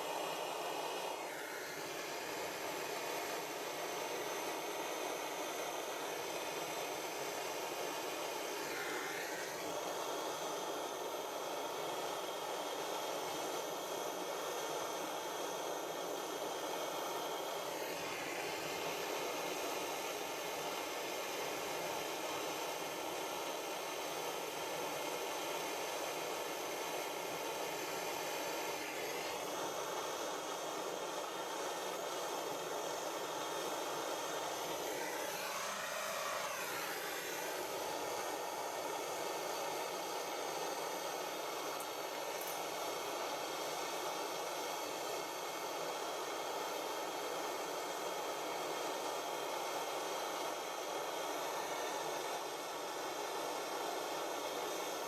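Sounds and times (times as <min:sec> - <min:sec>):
blow lamp hissing: 0:00.0 - 0:55.0.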